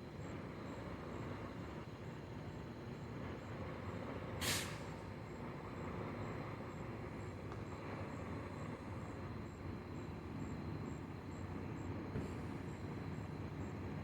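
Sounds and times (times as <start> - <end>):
insect chirping: 0.0 - 13.9
brief hiss: 4.4 - 5.1.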